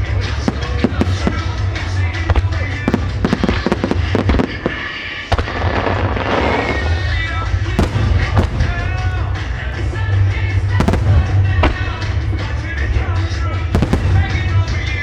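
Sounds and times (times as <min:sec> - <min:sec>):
fireworks bangs: 0:00.0 - 0:15.0
fireworks crackling: 0:00.0 - 0:15.0
music over loudspeakers: 0:00.0 - 0:15.0.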